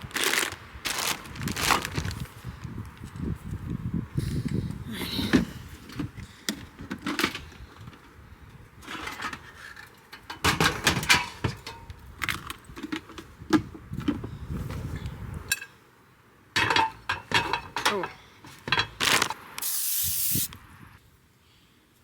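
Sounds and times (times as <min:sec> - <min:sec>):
items clinking and rustling: 0:00.1 - 0:02.3, 0:08.8 - 0:14.2, 0:16.6 - 0:19.4.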